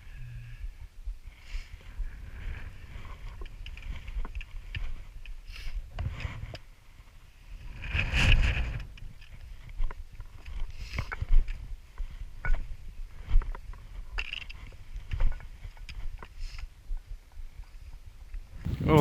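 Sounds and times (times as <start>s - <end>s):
wind buffeting microphone: 17.9s - 19.0s
footsteps on rocky path: 18.6s - 19.0s.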